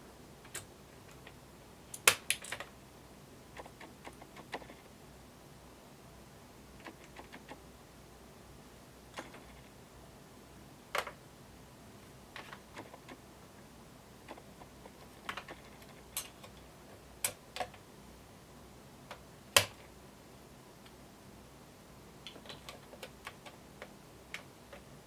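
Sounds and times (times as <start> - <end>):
keyboard switch parts clicking: 0.5 - 2.7, 19.1 - 19.8.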